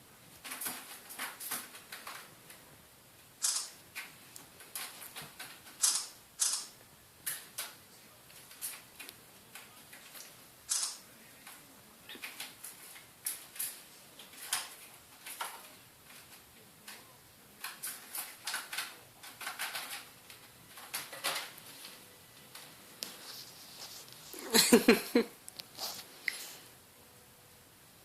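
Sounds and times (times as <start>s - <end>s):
kitten scratching and tapping: 17.6s - 21.6s.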